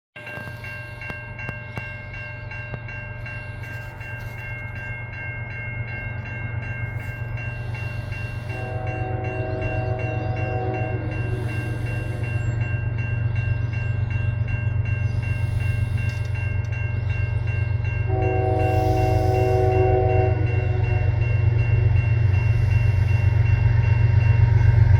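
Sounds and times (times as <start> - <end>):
crossing bell ringing: 0.2 - 24.9
diesel locomotive engine rumble: 0.2 - 24.9
train air horn blasts: 8.5 - 12.3, 18.1 - 21.4.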